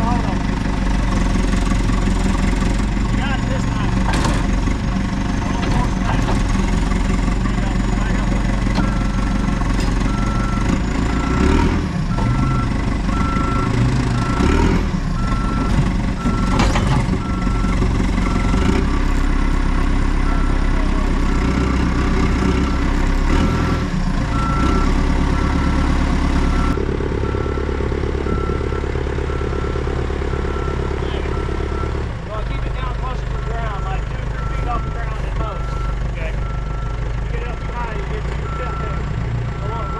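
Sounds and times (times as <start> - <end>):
diesel engine running: 0.0 - 39.9
reversing alarm beeping: 7.4 - 19.0, 26.4 - 32.0, 33.4 - 39.9.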